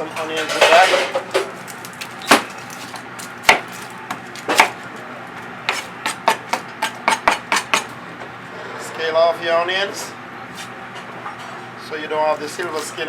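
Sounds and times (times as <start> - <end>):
knife chopping on cutting board: 3.5 - 4.8, 5.7 - 7.9.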